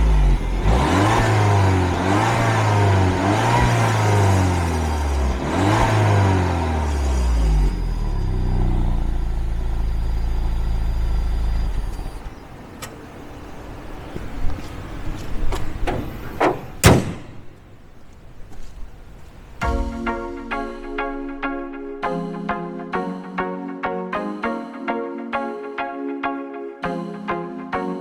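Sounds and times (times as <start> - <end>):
car engine revving and idling: 0.0 - 15.2.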